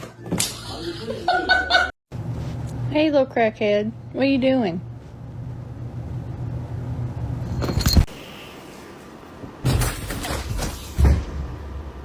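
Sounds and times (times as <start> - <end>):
low steady hum: 0.9 - 10.0.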